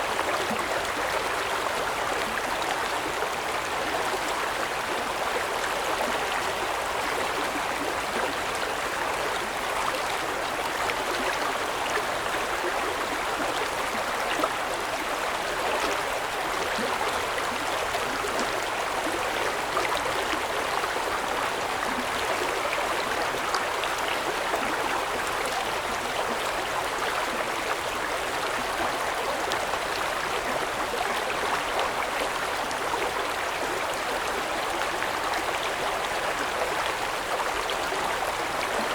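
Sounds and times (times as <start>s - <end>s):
stream water babbling: 0.0s - 38.9s.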